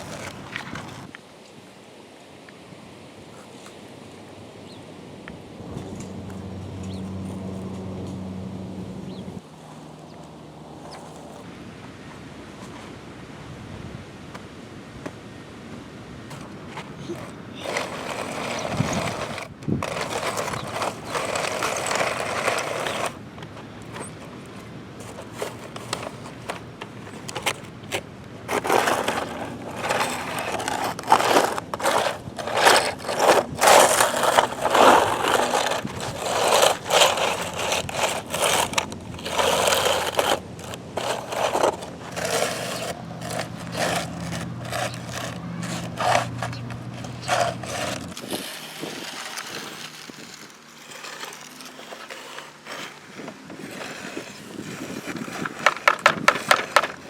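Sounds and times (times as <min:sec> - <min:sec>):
toy digger scraping gravel: 0:00.0 - 0:01.1, 0:16.3 - 0:57.0.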